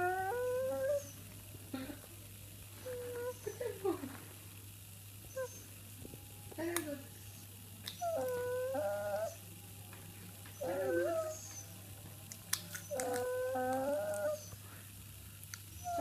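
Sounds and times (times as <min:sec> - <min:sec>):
dog whining: 0:00.0 - 0:01.2, 0:02.8 - 0:03.6, 0:05.3 - 0:05.7, 0:08.0 - 0:09.4, 0:10.6 - 0:11.7, 0:12.7 - 0:14.6, 0:15.8 - 0:16.0.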